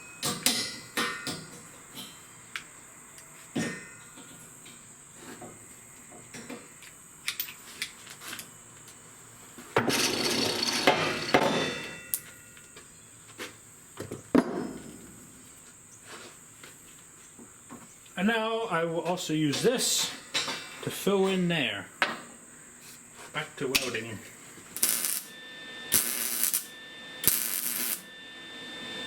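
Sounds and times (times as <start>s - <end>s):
harsh metalworking burst: 24.8s - 28.2s.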